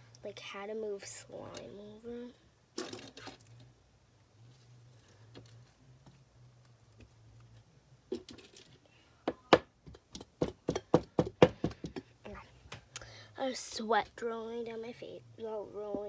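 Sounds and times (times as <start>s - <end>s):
faint low hum: 0.0s - 10.4s.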